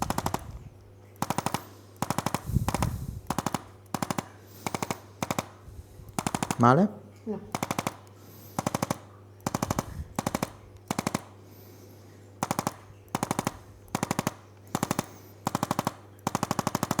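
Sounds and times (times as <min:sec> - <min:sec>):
rapid clicking of adjusting instrument: 0:00.0 - 0:06.8, 0:07.5 - 0:11.5, 0:12.4 - 0:17.0.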